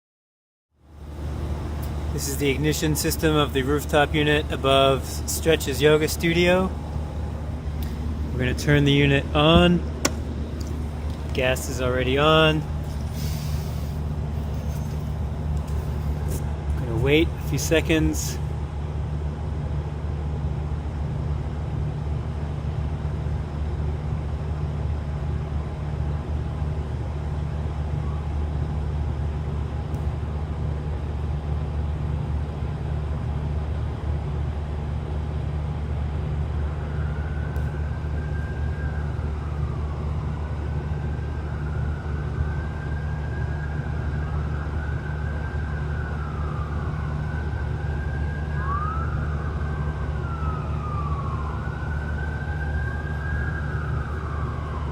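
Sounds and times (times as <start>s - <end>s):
hvac unit humming: 0.9s - 19.3s
distant siren wailing: 1.0s - 19.1s, 26.6s - 29.2s, 35.9s - 54.9s.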